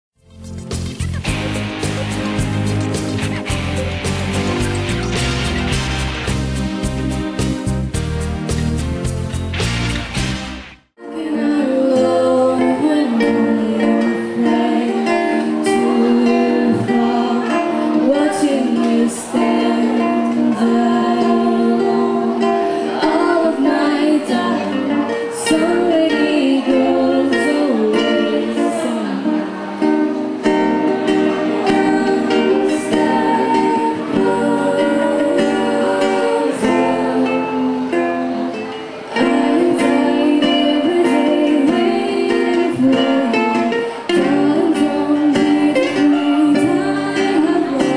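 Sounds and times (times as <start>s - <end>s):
plucked string chords: 0.2s - 47.9s
person singing: 11.0s - 47.9s.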